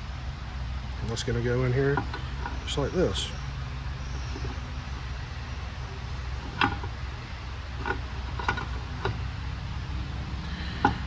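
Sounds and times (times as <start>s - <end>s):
steady low hum: 0.0s - 11.0s
metal parts clicking: 6.3s - 7.0s, 7.8s - 9.3s.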